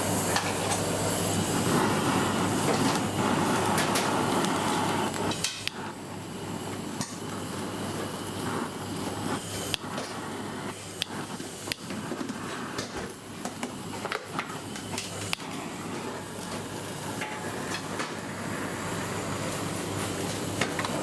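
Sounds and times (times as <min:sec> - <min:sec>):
ventilation hum: 0:00.0 - 0:21.0.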